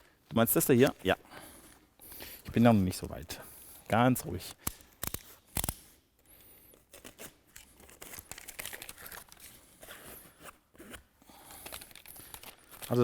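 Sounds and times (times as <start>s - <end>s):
tape tearing and peeling: 4.6s - 6.0s, 6.6s - 13.0s
plastic film crinkling: 6.8s - 9.9s, 11.6s - 13.0s.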